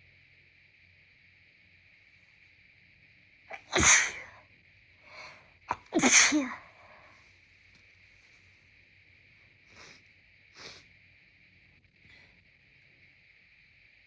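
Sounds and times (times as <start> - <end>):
person sneezing: 3.5 - 4.4, 5.1 - 7.0
quick catch of breath: 5.1 - 5.5.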